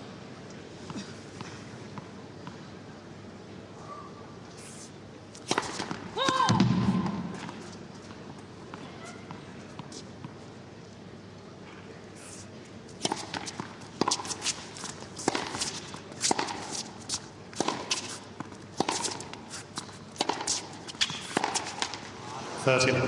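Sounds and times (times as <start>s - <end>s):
stadium crowd hum: 0.0s - 23.0s
tennis ball struck by rackets: 5.4s - 7.6s, 13.0s - 16.9s, 17.6s - 22.1s
tennis ball bouncing on court: 5.4s - 10.4s, 13.0s - 22.1s.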